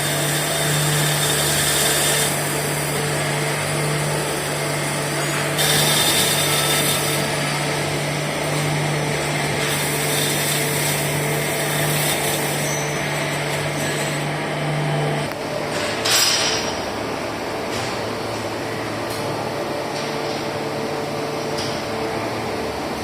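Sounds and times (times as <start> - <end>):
tool cutting hiss: 0.0 - 3.1, 4.0 - 8.0, 9.1 - 14.3
lathe spindle hum: 0.0 - 16.0.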